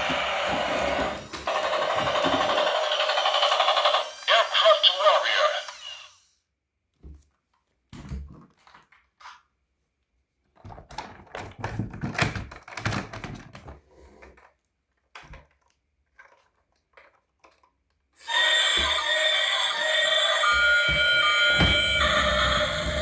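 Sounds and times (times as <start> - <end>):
electronic jingle: 18.2 - 23.0.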